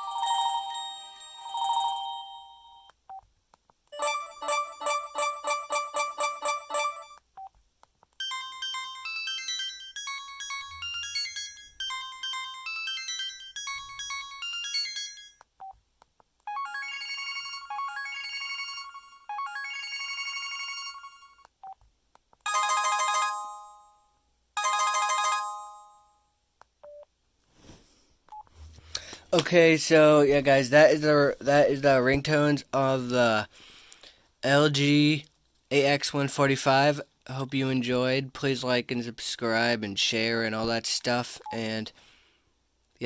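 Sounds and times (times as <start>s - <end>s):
phone ringing tones: 0.0s - 2.9s, 4.0s - 7.2s, 8.2s - 15.7s, 16.5s - 21.8s, 22.5s - 23.9s, 24.6s - 26.1s
phone ringtone melodies: 0.0s - 2.9s, 4.0s - 7.2s, 8.2s - 15.4s, 16.5s - 21.4s, 22.5s - 26.2s.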